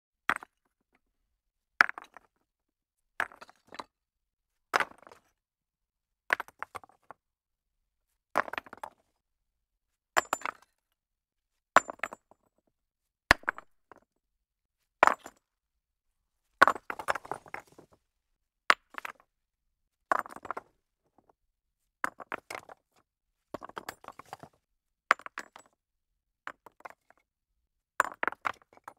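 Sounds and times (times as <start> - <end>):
stones dropped onto stone pile: 1.8 - 2.3, 13.3 - 14.0, 16.6 - 18.0, 20.1 - 20.7, 22.0 - 22.8, 23.5 - 25.8, 28.0 - 28.9.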